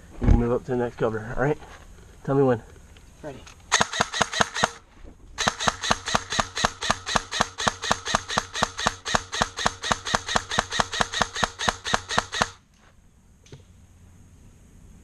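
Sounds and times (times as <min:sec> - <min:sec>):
airsoft gun firing: 0:03.7 - 0:04.8, 0:05.4 - 0:12.6.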